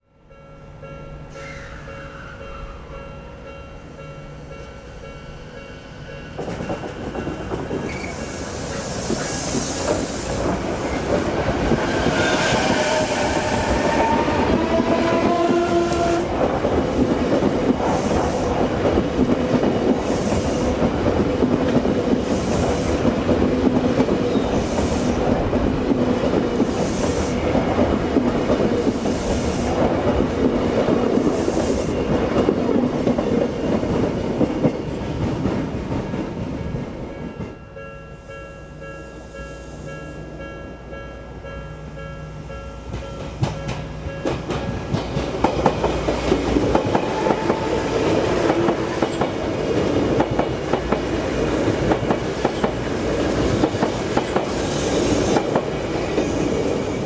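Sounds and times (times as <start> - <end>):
train inverter whine: 0.3 - 32.6, 39.0 - 57.0
wheel and rail noise: 5.6 - 57.0
train hiss: 7.9 - 14.5, 15.2 - 18.7, 19.9 - 20.9, 22.1 - 23.2, 24.3 - 25.4, 26.6 - 27.6, 28.8 - 30.0, 31.1 - 32.1, 53.2 - 56.5.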